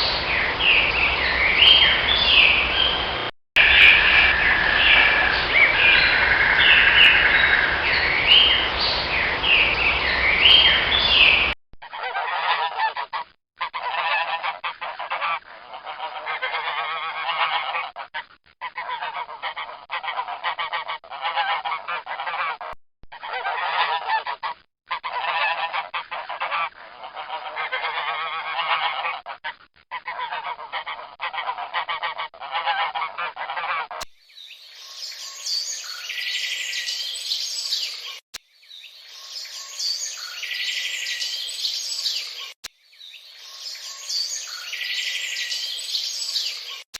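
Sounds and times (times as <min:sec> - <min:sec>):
flock of birds calling: 0:00.0 - 0:13.0, 0:30.0 - 0:38.2, 0:38.8 - 0:46.9.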